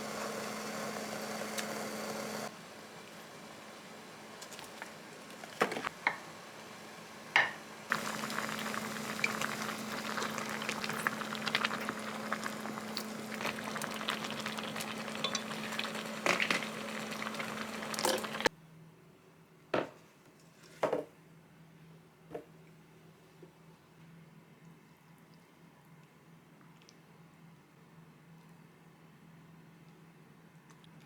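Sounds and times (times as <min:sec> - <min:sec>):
food bubbling and crackling in pan: 0:07.9 - 0:18.5.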